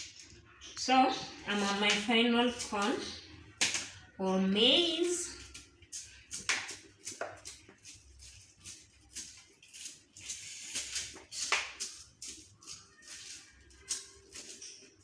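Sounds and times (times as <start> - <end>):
corn kernels crackling off cob: 4.7 - 15.0.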